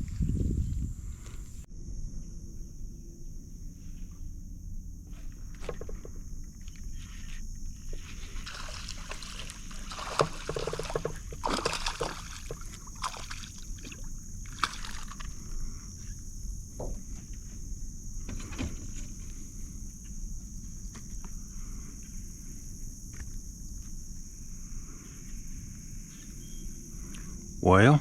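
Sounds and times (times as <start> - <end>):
low hum: 0.0 - 18.2
knocks in a boat: 5.5 - 6.2, 9.8 - 13.2, 16.7 - 17.4.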